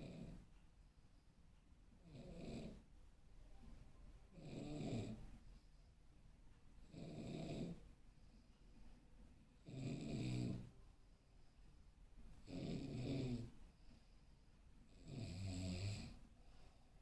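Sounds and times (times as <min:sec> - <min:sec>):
person snoring: 0:09.6 - 0:10.7, 0:12.4 - 0:13.5, 0:15.0 - 0:16.2
faint breathing: 0:16.0 - 0:17.0.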